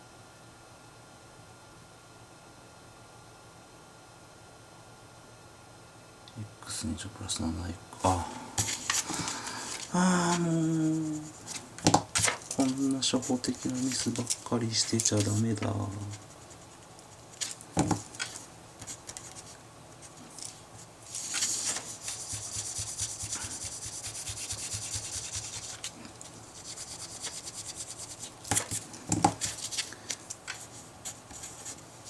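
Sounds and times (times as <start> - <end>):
rubbing and scratching on paper: 8.6 - 32.0.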